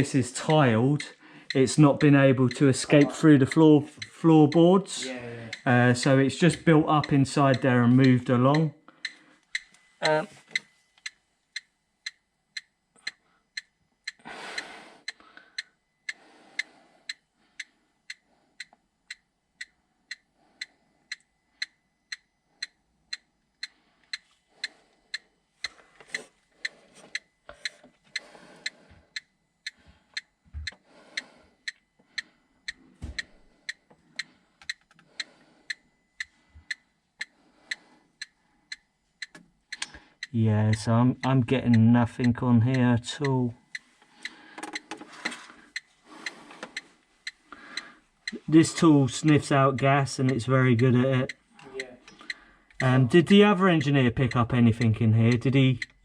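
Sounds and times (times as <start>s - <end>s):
gas detector ticking: 0.0s - 56.0s.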